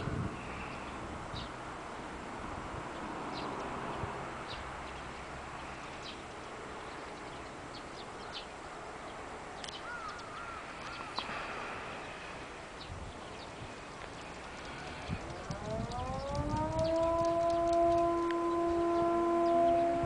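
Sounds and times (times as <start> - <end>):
outdoor background hum: 0.0 - 20.0
high bird chirps: 12.8 - 17.8
wavering whistle-like tone: 15.2 - 20.0.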